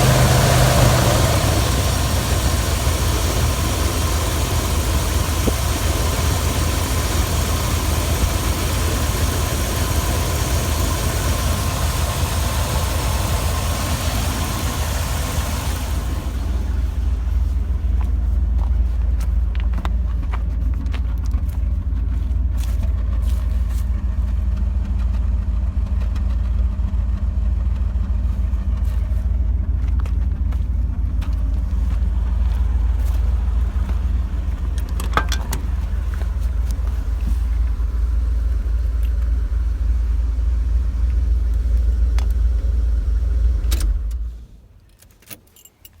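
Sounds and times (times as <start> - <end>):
engine idling: 0.0 - 44.8.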